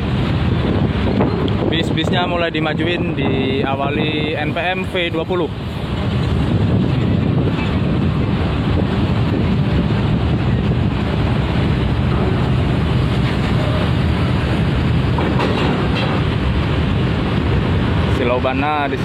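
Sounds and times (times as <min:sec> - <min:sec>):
wind buffeting microphone: 0:00.0 - 0:19.0
bus diesel engines: 0:05.1 - 0:18.9.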